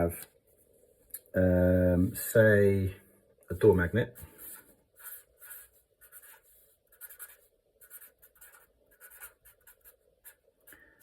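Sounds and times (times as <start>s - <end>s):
pen scratching on paper: 4.3s - 10.5s.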